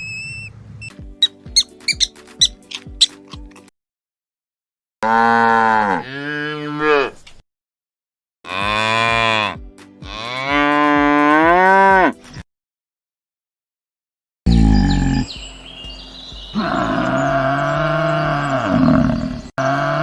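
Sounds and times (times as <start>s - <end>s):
cow mooing: 5.0s - 7.2s, 8.5s - 12.2s, 14.5s - 15.3s, 16.6s - 20.0s.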